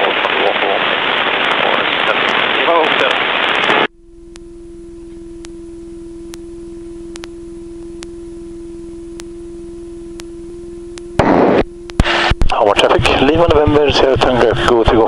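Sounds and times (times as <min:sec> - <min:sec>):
electrical tone and hum: 0:00.0 - 0:15.0
faint low rumble: 0:00.0 - 0:15.0
sharp clicks: 0:07.1 - 0:07.4.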